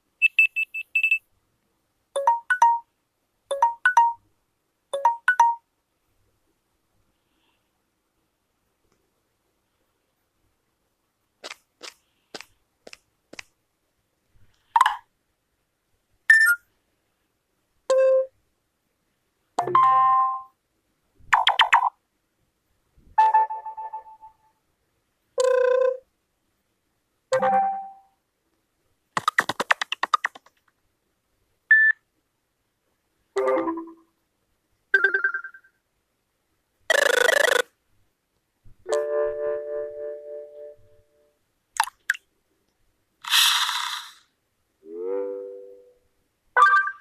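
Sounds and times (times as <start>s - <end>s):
phone notification tones: 2.2s - 2.9s, 3.5s - 4.2s, 5.0s - 5.6s, 35.0s - 35.7s.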